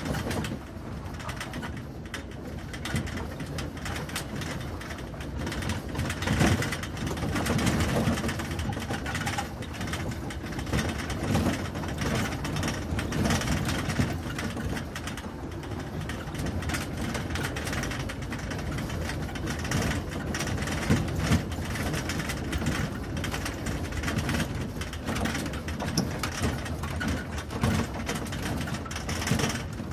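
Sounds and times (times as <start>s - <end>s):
cargo bed rattling and clattering: 0.0s - 29.9s
engine rumble: 0.0s - 29.9s.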